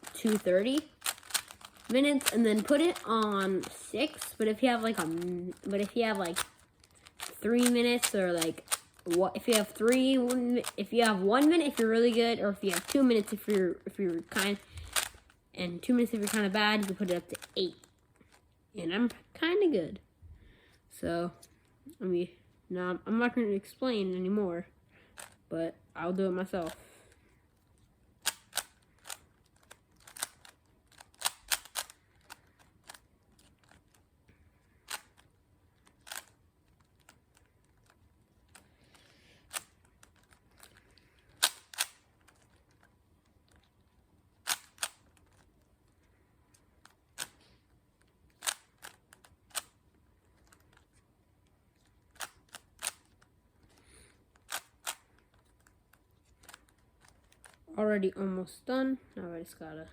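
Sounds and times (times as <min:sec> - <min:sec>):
plastic puzzle cube clicking: 0:00.0 - 0:18.6, 0:25.1 - 0:25.4, 0:26.5 - 0:57.7.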